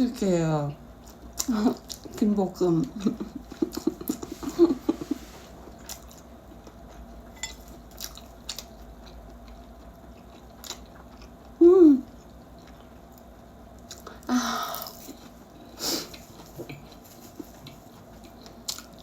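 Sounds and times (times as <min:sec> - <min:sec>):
person chewing food: 0:01.0 - 0:02.2, 0:02.9 - 0:19.0
muffled voiced hum: 0:11.6 - 0:12.2.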